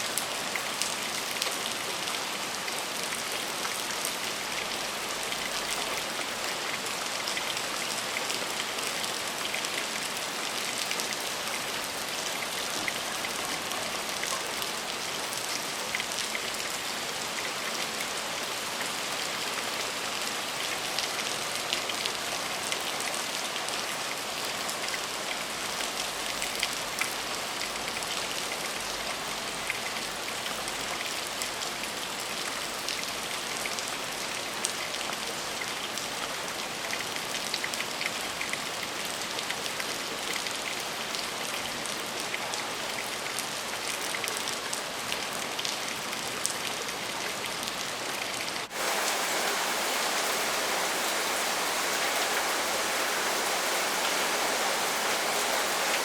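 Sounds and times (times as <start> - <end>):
heavy rain falling: 44.3 - 56.0.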